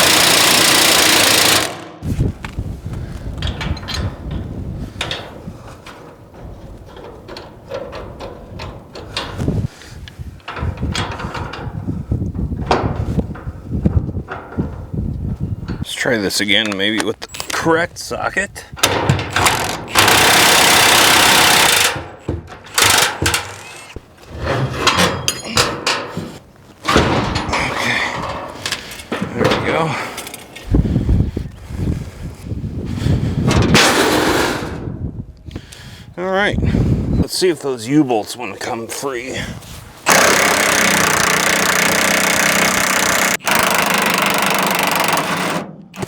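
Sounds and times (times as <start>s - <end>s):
power tool running on bolt: 0.0s - 2.0s, 19.4s - 22.1s, 22.7s - 24.0s, 40.1s - 46.0s
metal tools knocking and clinking: 3.4s - 4.4s, 18.8s - 24.0s, 24.8s - 30.6s.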